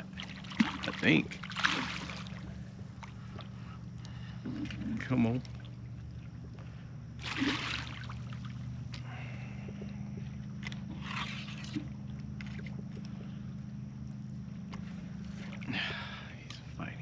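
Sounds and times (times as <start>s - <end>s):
water splashing: 0.0s - 6.4s, 7.2s - 9.0s
steady low hum: 0.0s - 17.0s.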